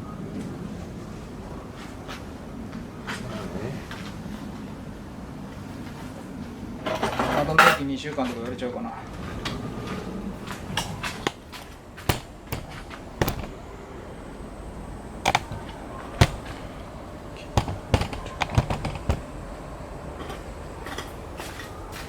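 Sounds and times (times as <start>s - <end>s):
metal engine parts clinking: 9.2s - 20.9s.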